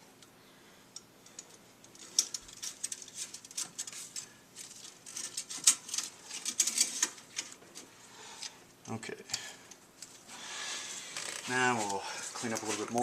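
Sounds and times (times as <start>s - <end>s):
small clicks rattles and rustles: 0.9s - 8.6s.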